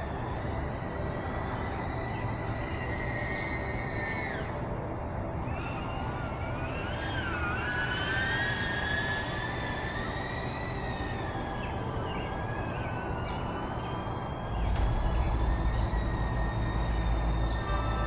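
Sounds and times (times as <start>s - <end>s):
drone propellers whining: 5.9s - 18.0s
loud low rumble: 14.6s - 18.0s.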